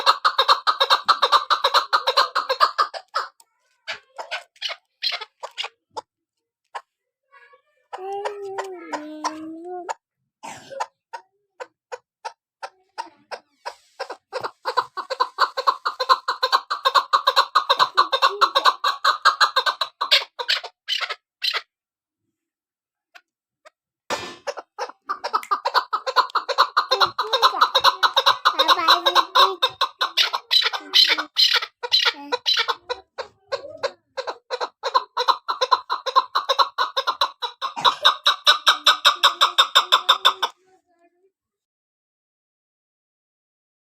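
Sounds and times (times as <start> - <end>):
partridge calling: 0.0 - 3.3, 13.6 - 21.6, 24.5 - 40.5.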